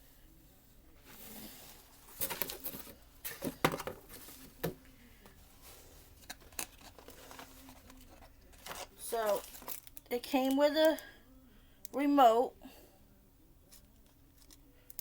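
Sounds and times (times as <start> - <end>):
packaging rustling and crinkling: 1.2 - 10.1.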